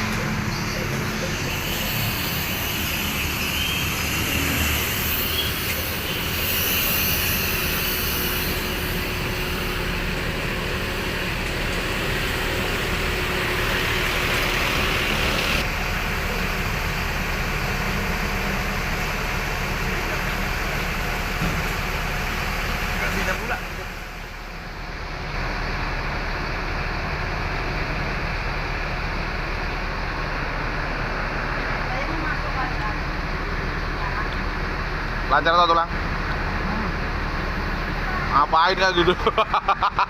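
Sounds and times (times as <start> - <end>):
vehicle engine and road rumble: 0.0 - 40.0
hiss: 1.2 - 12.9.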